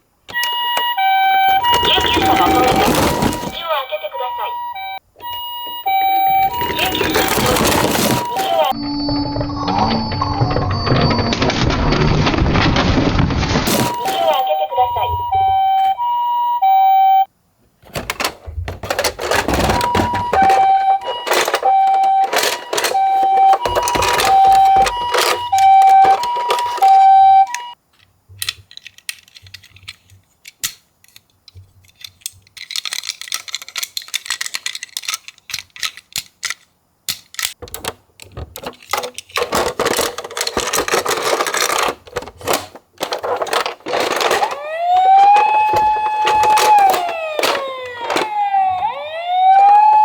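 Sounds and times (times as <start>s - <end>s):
toy cars clattering: 0.2s - 4.7s, 5.8s - 8.8s, 11.4s - 16.2s, 17.8s - 50.0s
two-tone ambulance siren: 0.3s - 11.5s, 13.7s - 17.3s, 19.3s - 27.8s, 43.5s - 50.0s.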